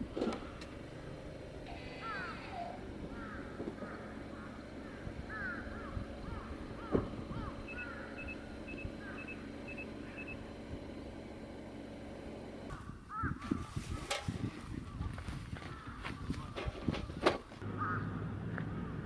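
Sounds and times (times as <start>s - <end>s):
crows calling: 1.7s - 10.4s, 12.7s - 14.0s, 14.9s - 16.6s, 17.7s - 18.2s
faint even beeping: 7.6s - 10.4s.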